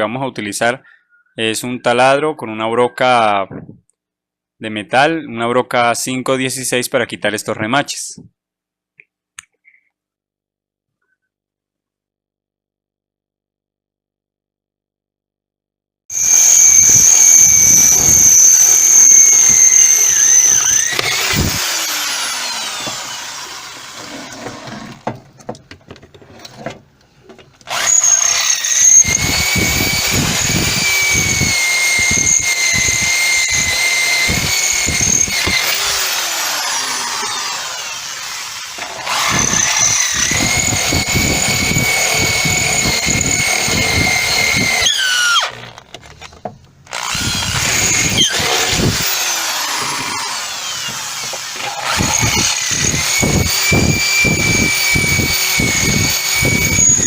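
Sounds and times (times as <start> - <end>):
electric drill whining: 16.1 - 25.0, 27.6 - 57.0.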